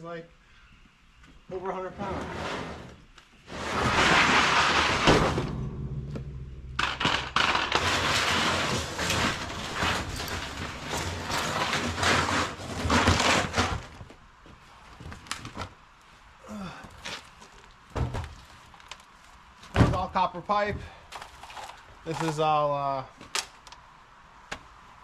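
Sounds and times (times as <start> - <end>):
metal drums scraping and clattering: 2.0 - 14.1.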